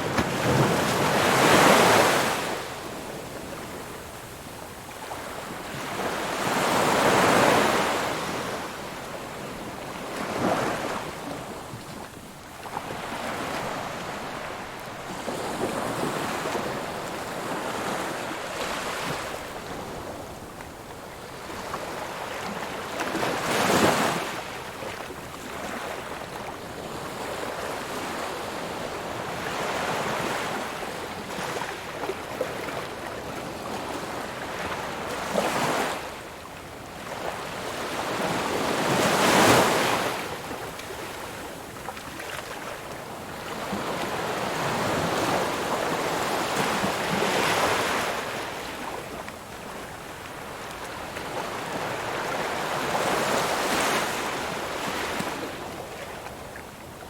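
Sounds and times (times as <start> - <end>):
ocean waves breaking on shore: 0.0 - 57.0.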